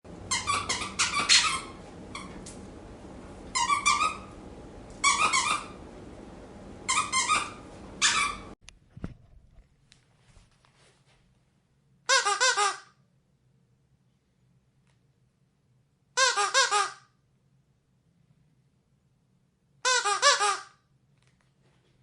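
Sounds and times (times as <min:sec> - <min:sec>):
squeaky dog toy squeaking: 0:00.3 - 0:02.3, 0:03.5 - 0:04.3, 0:05.0 - 0:05.8, 0:06.9 - 0:08.5, 0:12.1 - 0:12.9, 0:16.2 - 0:17.0, 0:19.8 - 0:20.7.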